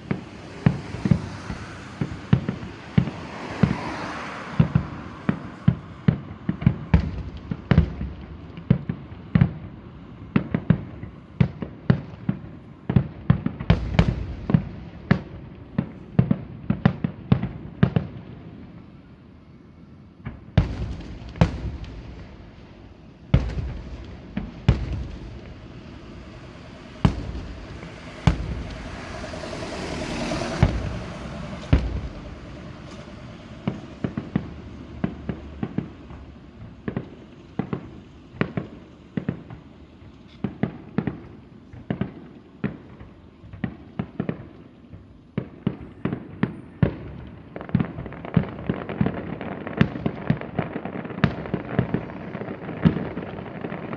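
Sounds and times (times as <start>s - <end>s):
fireworks hissing: 0.0s - 8.6s, 20.6s - 41.9s
sharp firework bangs: 0.0s - 9.6s, 10.3s - 18.2s, 20.2s - 39.6s
fireworks booming: 0.0s - 18.7s, 20.2s - 53.9s.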